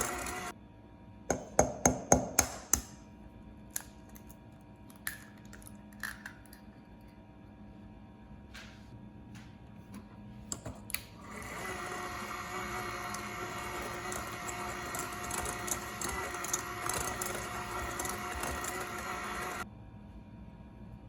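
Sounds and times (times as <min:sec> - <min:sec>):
small electric motor whirring: 0:00.0 - 0:00.5, 0:11.2 - 0:19.6.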